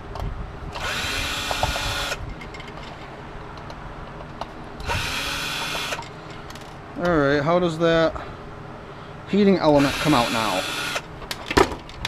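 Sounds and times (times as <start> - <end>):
power drill running: 0.8 - 2.2, 4.8 - 6.0, 9.7 - 11.1
metal parts clicking and rattling: 1.4 - 4.5.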